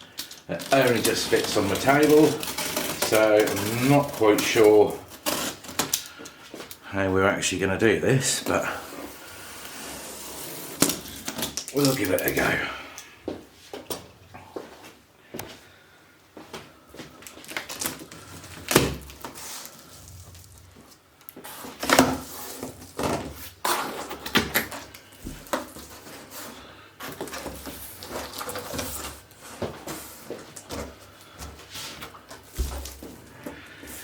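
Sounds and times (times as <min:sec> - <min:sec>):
rustling: 0:00.0 - 0:06.8, 0:16.5 - 0:34.0
knocks and thumps on cardboard box: 0:32.4 - 0:33.2.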